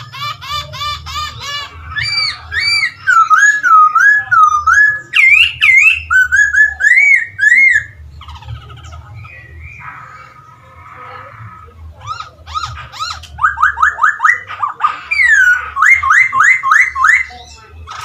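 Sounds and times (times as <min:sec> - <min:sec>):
scratchy bird chatter: 0:00.0 - 0:18.0
bird singing whistled notes: 0:01.9 - 0:08.0, 0:15.1 - 0:17.7.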